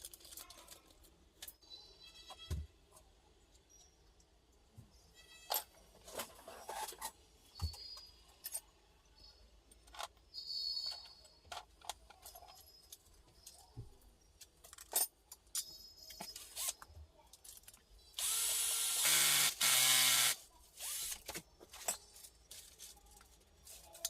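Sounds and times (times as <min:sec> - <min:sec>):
tinkling rings: 0:14.3 - 0:16.9.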